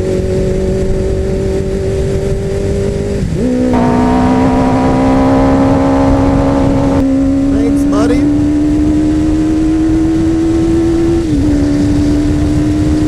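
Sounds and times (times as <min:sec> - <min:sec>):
motorcycle engine exhaust: 0:00.0 - 0:13.0.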